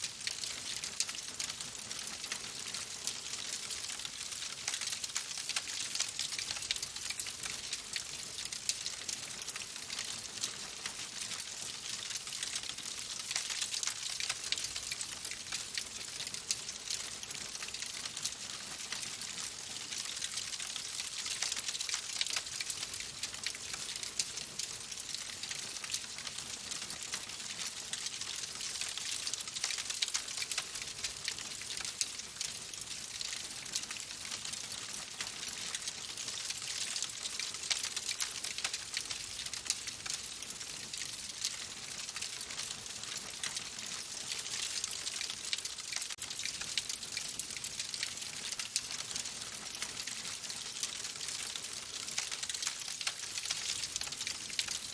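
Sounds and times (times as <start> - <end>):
wood fire crackling: 36.3 - 54.8.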